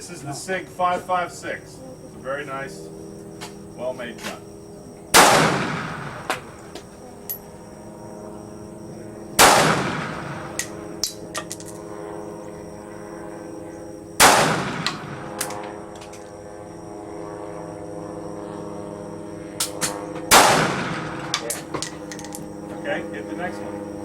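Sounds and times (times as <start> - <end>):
rifle shots with echo: 5.1 - 6.8, 9.4 - 11.7, 14.2 - 15.8, 19.6 - 22.0
light metal clinks: 6.9 - 7.6.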